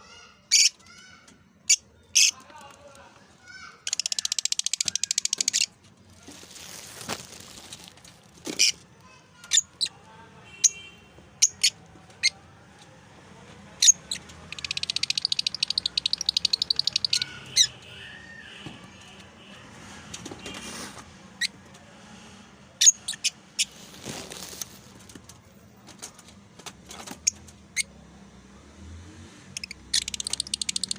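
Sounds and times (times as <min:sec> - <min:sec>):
lovebirds chirping and squawking: 0:00.0 - 0:02.5, 0:03.6 - 0:08.8, 0:09.4 - 0:10.0, 0:10.6 - 0:12.4, 0:13.8 - 0:18.7, 0:22.8 - 0:24.8, 0:29.6 - 0:30.9
rapid bird chatter: 0:03.8 - 0:05.8, 0:13.8 - 0:18.3, 0:29.6 - 0:30.9.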